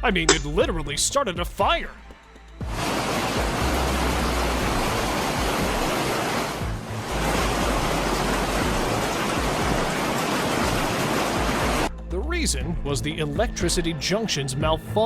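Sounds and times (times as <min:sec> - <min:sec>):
hail and rain pounding: 0:02.7 - 0:11.9.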